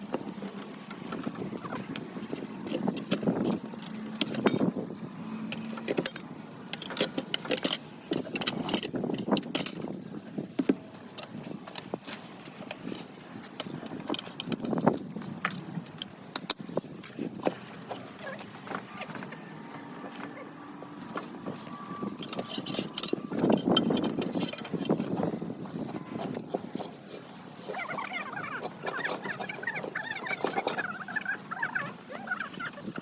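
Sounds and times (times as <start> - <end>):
metal tools clinking on wheel rim: 1.6 - 4.8, 5.5 - 9.9, 14.0 - 20.4, 22.2 - 25.2.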